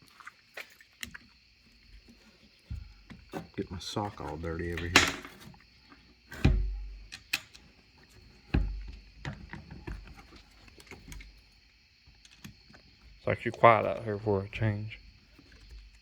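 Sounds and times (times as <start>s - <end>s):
metal parts knocking and clunking: 3.3s - 5.5s.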